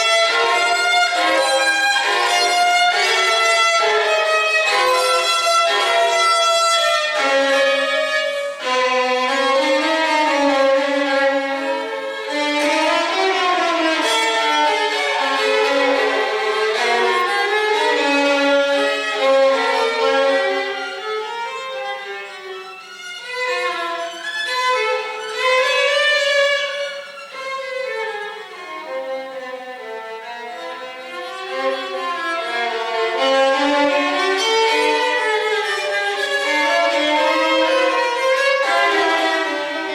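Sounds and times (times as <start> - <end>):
violin melody: 0.0 - 39.9.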